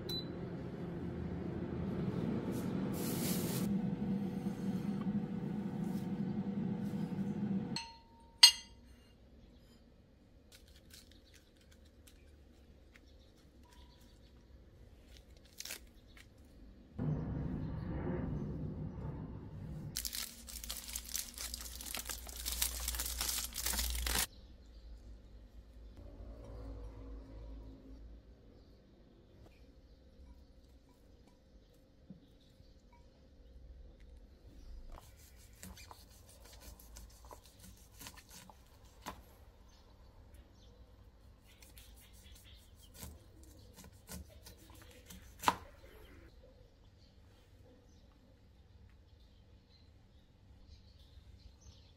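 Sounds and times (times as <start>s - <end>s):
close crinkling and crunching: 10.5s - 16.6s, 19.9s - 24.3s.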